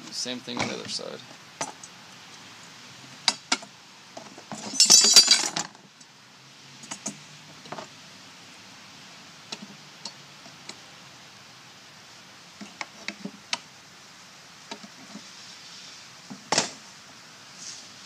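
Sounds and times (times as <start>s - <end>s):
metal hardware jangling: 4.5s - 5.7s.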